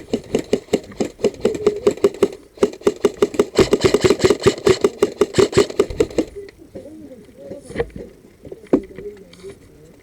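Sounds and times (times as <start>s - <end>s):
camera and kit rattling: 0.0s - 6.3s.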